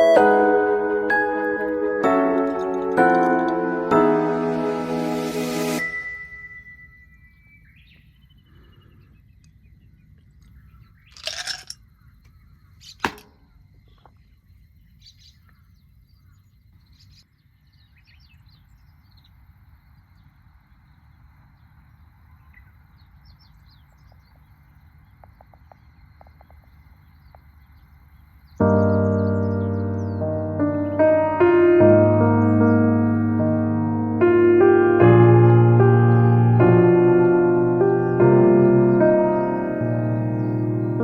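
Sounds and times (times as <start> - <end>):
piano music: 0.0 - 7.3, 28.6 - 41.0
faint bird chirps: 6.3 - 11.2, 11.8 - 30.4.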